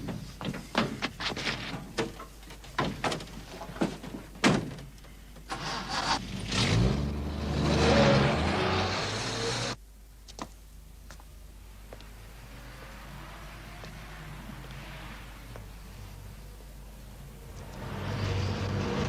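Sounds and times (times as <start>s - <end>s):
vehicle engine revving: 5.9s - 9.8s, 17.5s - 19.0s.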